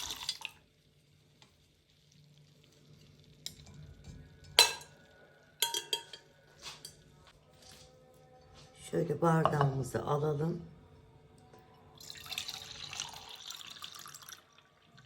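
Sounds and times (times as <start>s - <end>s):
utensils clinking on glass: 4.4s - 5.0s, 5.6s - 7.0s.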